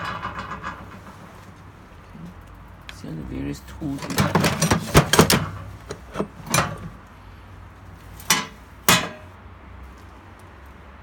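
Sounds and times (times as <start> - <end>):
hard objects clattering: 3.9 - 7.0, 8.2 - 9.4.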